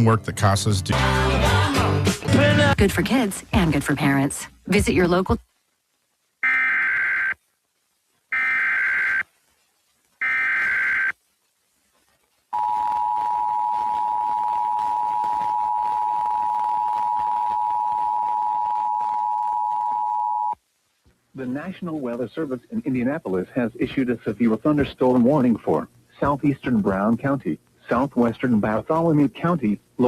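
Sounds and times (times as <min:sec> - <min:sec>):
buzzy data header bursts: 0:06.4 - 0:07.4, 0:08.3 - 0:09.3, 0:10.2 - 0:11.1.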